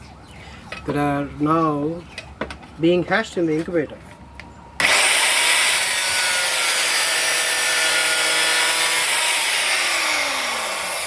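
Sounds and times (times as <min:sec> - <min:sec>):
power cutter grinding steel: 0:04.8 - 0:11.0.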